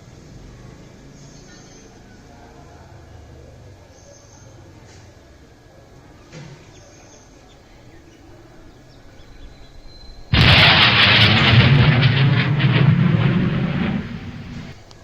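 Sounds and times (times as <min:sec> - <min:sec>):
faint background hum: 0:00.0 - 0:15.0
loud boom with rumble: 0:10.3 - 0:14.8.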